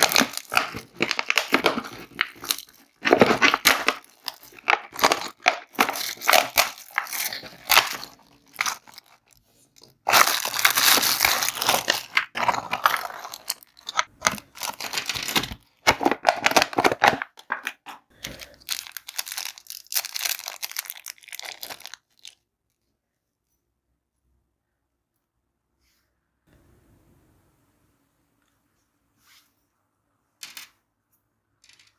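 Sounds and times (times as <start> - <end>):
plastic wrappers crinkling: 0.0 - 22.4.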